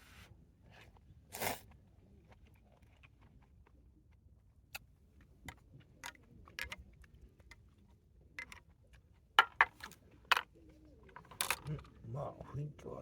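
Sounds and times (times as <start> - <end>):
objects clicking and knocking: 4.7 - 7.8, 8.4 - 12.0.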